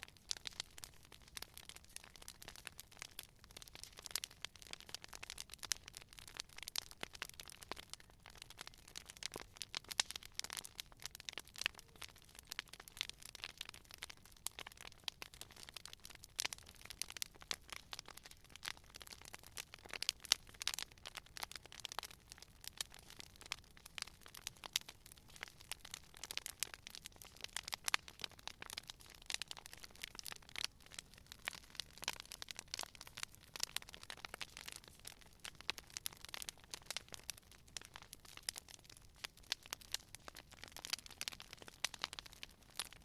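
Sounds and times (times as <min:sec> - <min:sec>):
wood fire crackling: 0:00.0 - 0:43.0.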